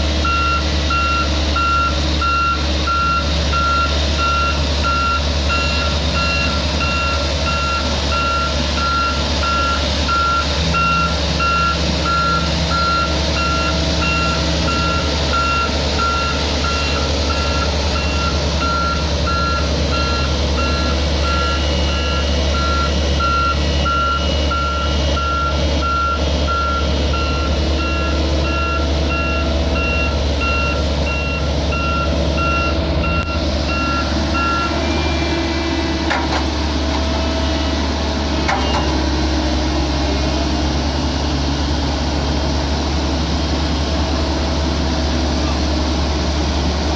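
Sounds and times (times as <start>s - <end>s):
diesel engine droning: 0.0s - 46.9s
reversing alarm beeping: 0.2s - 35.5s, 37.0s - 39.1s.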